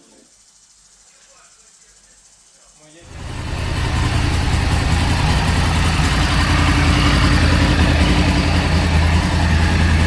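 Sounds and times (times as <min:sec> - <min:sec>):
motorcycle engine idling: 0:03.0 - 0:10.0.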